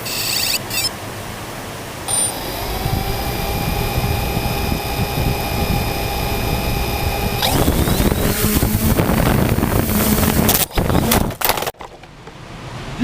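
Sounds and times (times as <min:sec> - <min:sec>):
drone motors whining: 0:02.0 - 0:11.2.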